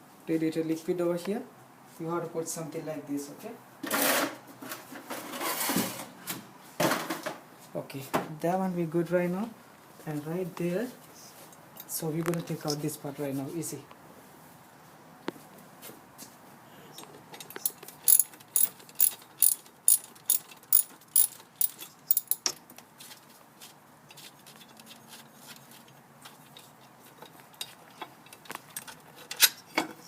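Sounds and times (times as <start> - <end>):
ratchet wrench clicking: 17.6 - 22.4.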